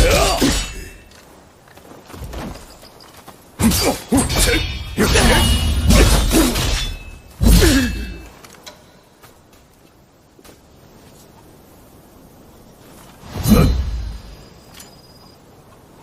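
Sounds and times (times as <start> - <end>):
blade strikes and clashes: 0.0 - 1.1, 3.6 - 8.3.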